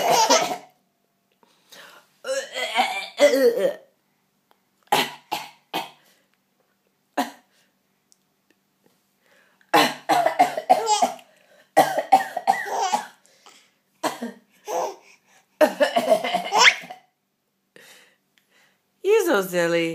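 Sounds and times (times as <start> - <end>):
person coughing: 0.0 - 0.7, 9.7 - 11.2, 11.8 - 13.2, 14.0 - 14.5, 15.6 - 17.1.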